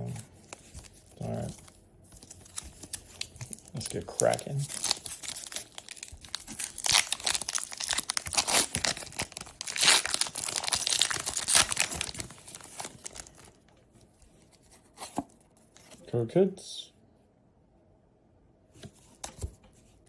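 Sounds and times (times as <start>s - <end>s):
foil wrapper tearing and crinkling: 2.4s - 13.6s.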